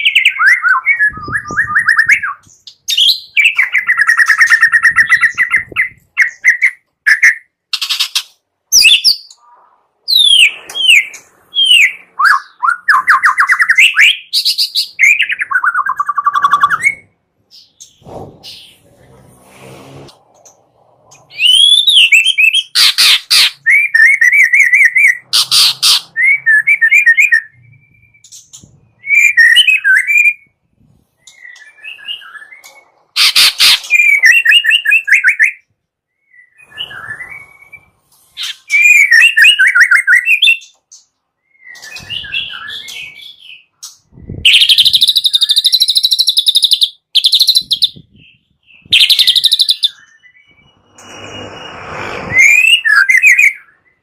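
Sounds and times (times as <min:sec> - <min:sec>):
songbird trills and whistles: 0:31.2 - 0:51.5.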